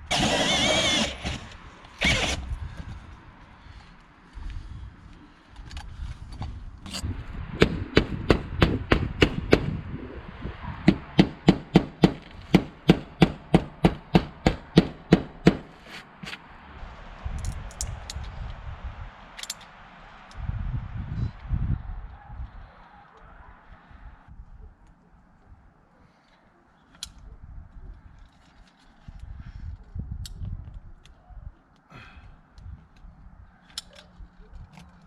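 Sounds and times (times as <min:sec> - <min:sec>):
rapid hammer blows: 0:10.9 - 0:16.4.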